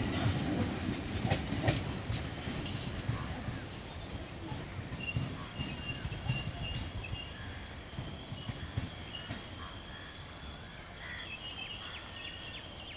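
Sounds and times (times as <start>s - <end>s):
train wheels knocking over rail joints: 0.0s - 10.1s.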